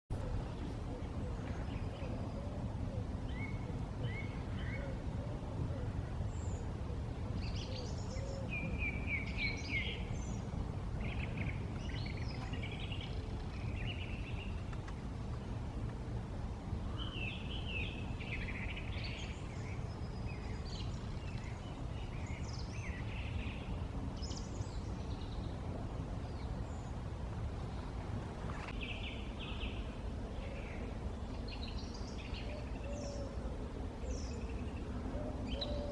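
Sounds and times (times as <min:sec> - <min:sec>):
low background rumble: 0:00.1 - 0:35.9
birds singing and calling: 0:00.2 - 0:15.0, 0:28.6 - 0:35.9.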